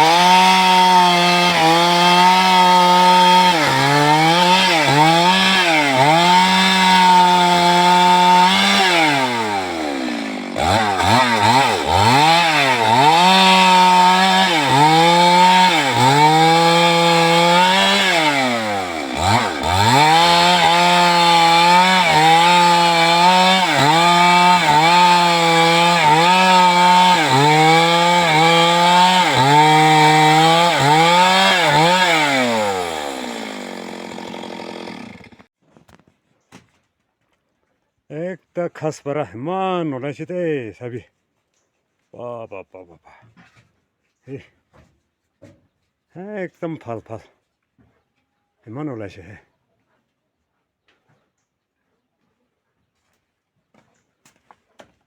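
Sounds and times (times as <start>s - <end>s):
chainsaw engine revving: 0.0s - 35.5s.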